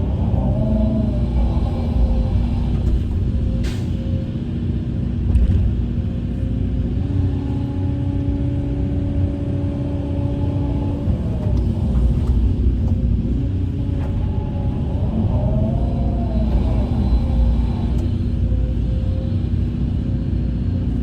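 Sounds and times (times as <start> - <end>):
diesel engine rumbling: 0.0 - 21.0.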